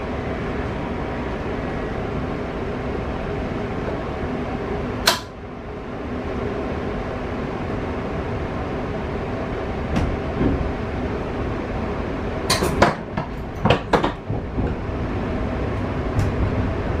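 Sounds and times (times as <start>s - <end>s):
train hum and rumble: 0.0s - 17.0s
sharp clunks and knocks: 9.9s - 10.7s, 12.5s - 14.9s.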